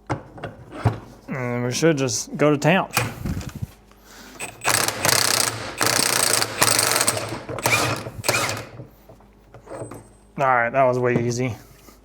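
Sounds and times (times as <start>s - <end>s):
impact wrench hammering: 4.4s - 8.9s.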